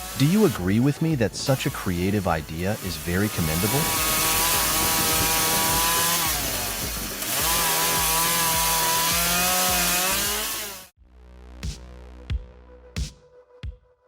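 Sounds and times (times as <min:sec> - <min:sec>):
chainsaw cutting log: 0:00.0 - 0:11.0.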